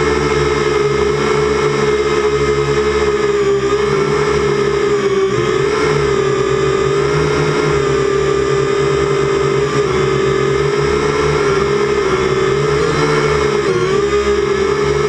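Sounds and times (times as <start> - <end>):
quadcopter propellers whining: 0.0 - 15.0.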